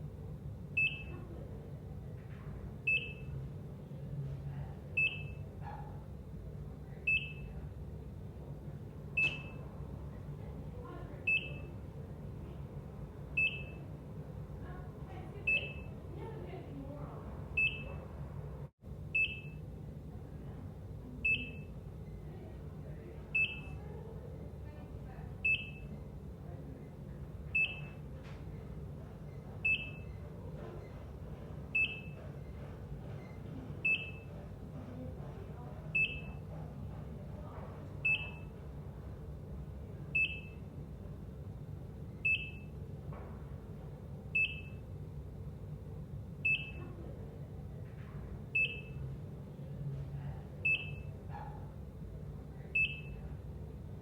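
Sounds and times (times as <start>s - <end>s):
low room hum: 0.0s - 54.0s
heart monitor beeping: 0.8s - 1.2s, 2.8s - 3.4s, 5.0s - 5.5s, 7.1s - 7.6s, 9.1s - 9.6s, 11.3s - 11.8s, 13.4s - 13.9s, 15.4s - 16.0s, 17.6s - 18.0s, 19.2s - 19.6s, 21.2s - 22.2s, 23.3s - 23.8s, 25.4s - 26.0s, 27.5s - 35.3s, 35.9s - 39.0s, 40.1s - 40.7s, 42.2s - 42.8s, 44.4s - 45.0s, 46.4s - 46.8s, 48.5s - 49.1s, 50.6s - 51.6s, 52.8s - 53.2s.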